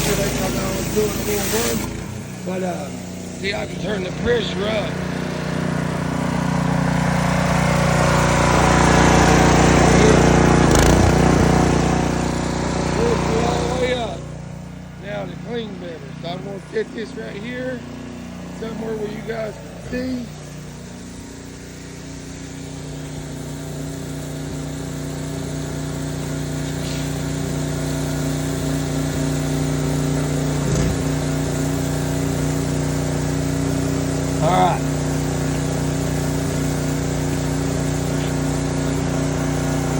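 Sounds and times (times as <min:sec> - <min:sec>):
hiss of spray: 0:00.0 - 0:04.1, 0:18.6 - 0:39.9
pressure washer engine running: 0:00.0 - 0:39.9.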